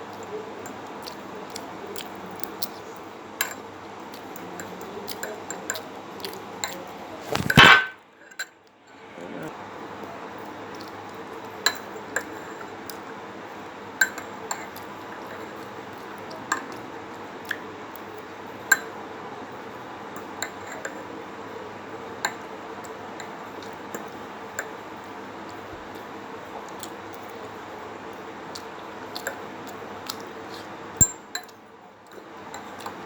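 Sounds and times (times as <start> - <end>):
tableware clinking: 7.3 - 8.5.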